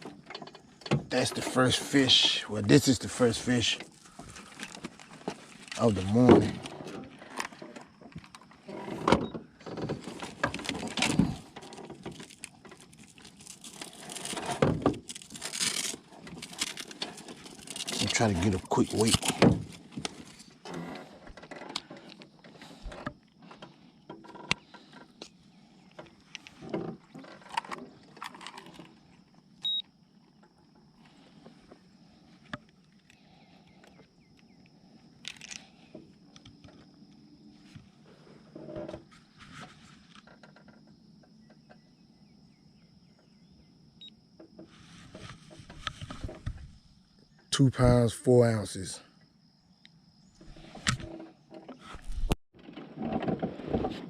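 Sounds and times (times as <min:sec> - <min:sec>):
fish handling clicks and rustles: 0:03.8 - 0:29.2, 0:35.2 - 0:36.9.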